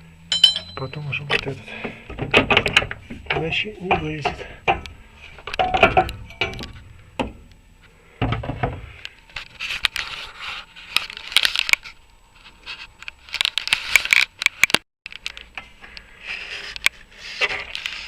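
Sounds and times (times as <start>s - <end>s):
metal tools and bolts clinking: 0.3s - 7.4s.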